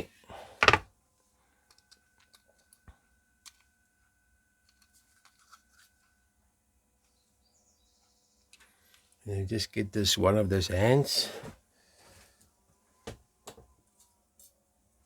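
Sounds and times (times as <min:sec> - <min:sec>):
faint small clicks of clock movement: 0:01.6 - 0:06.2, 0:08.4 - 0:09.2.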